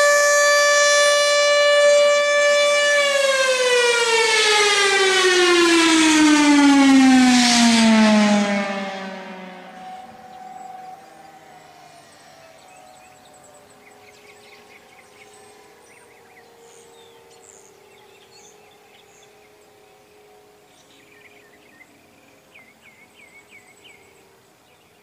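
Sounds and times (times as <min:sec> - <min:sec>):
civil defense siren winding down: 0:00.0 - 0:25.0
faint lower siren tones: 0:00.0 - 0:25.0.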